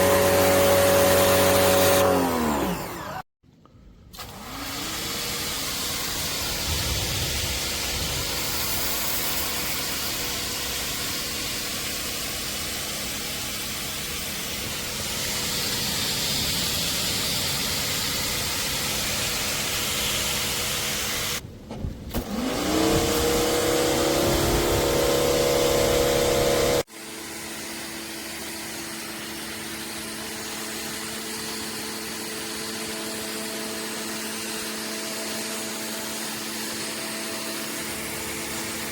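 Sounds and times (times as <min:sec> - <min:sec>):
pressure washer motor humming: 0:00.0 - 0:03.2, 0:04.2 - 0:21.4, 0:22.2 - 0:38.9
water spraying hiss: 0:05.8 - 0:21.4.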